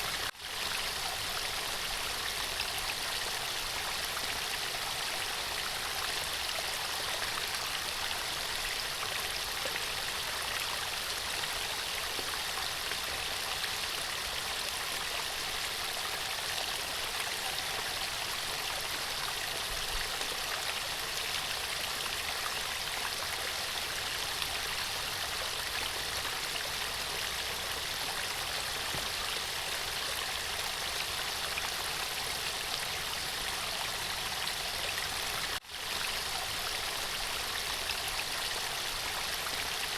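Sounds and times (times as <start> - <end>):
stream water rushing: 0.0 - 6.7.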